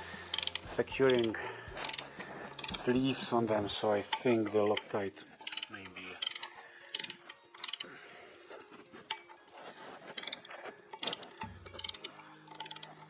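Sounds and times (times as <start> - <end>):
ratchet wrench clicking: 0.0 - 3.3, 4.0 - 7.9, 10.1 - 13.0.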